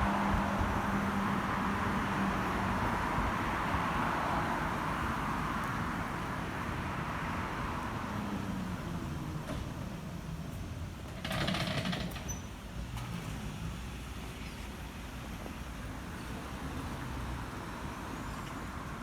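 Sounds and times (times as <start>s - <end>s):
passing vehicles: 0.0s - 12.0s.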